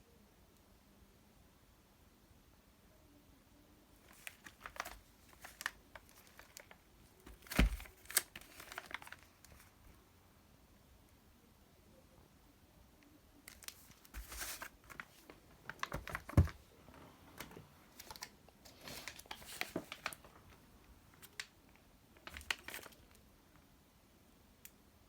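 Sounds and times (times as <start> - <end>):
plastic wrap crinkling: 4.1 - 9.7, 13.5 - 16.6, 17.4 - 21.5, 22.2 - 23.2
box thump: 7.3 - 8.2, 15.8 - 16.6
cardboard boxes tapping and rustling: 7.3 - 9.0, 14.2 - 14.7, 15.8 - 16.6.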